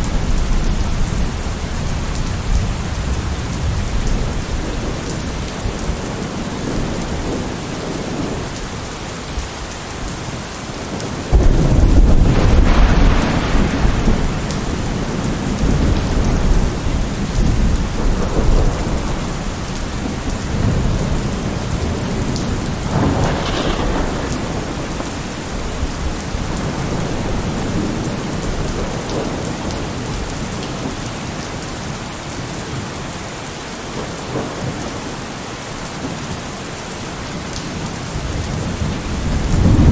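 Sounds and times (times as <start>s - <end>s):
heavy rain: 0.0s - 39.9s
thunder rumbling: 10.8s - 32.0s, 37.4s - 39.9s.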